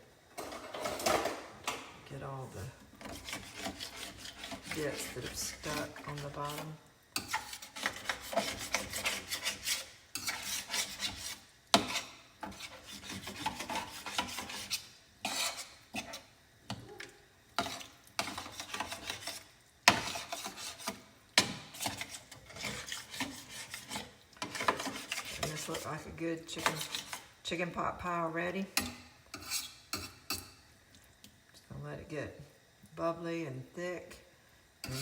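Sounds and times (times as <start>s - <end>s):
utensil scraping a pan: 2.6s - 16.3s, 17.6s - 27.4s, 28.8s - 30.5s.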